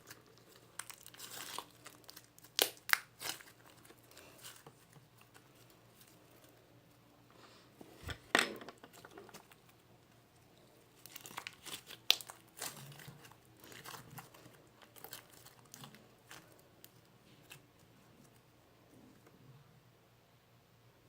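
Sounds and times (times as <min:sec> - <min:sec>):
slime crackling and popping: 0:00.0 - 0:06.1, 0:10.9 - 0:17.9.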